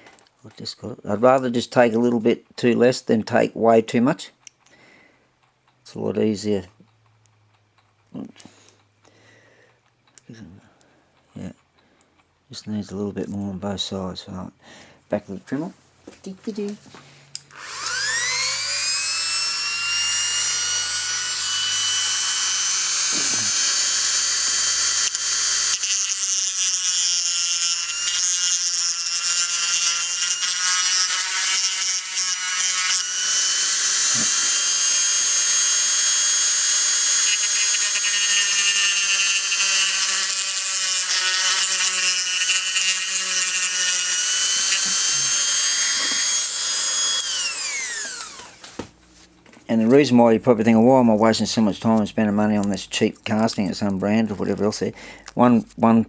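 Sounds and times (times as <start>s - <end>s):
rotary tool high whine: 17.4s - 48.8s.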